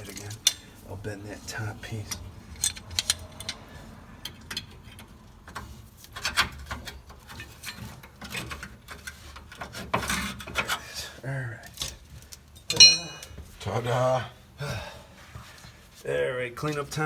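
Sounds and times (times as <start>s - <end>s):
pry bar clicking and scraping metal: 2.1s - 10.8s.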